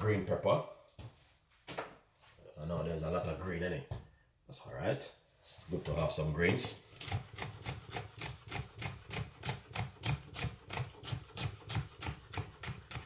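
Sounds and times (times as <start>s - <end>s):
knife chopping on cutting board: 7.0s - 13.0s.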